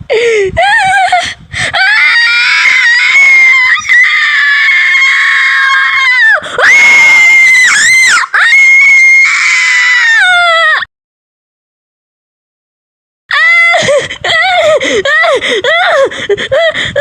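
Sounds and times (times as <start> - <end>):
high-pitched screaming: 1.8 - 10.8.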